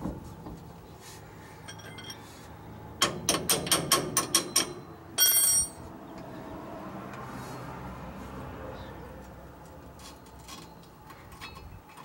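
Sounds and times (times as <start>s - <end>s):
sharp metallic clicks of hand tools: 3.0s - 4.8s.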